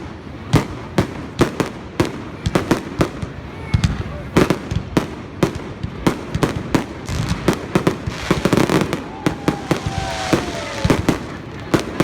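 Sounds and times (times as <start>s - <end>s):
fireworks bangs and cracks: 0.0s - 12.0s
firework whistle sliding down: 8.7s - 11.1s.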